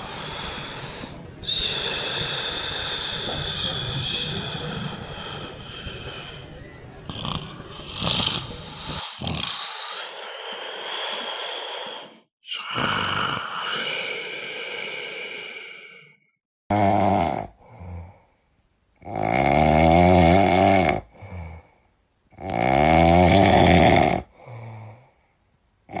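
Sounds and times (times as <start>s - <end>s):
loud snoring: 0.0s - 10.2s, 10.8s - 15.8s, 16.7s - 18.2s, 19.0s - 21.6s, 22.4s - 24.4s
soft breath: 0.0s - 12.3s, 13.4s - 16.2s.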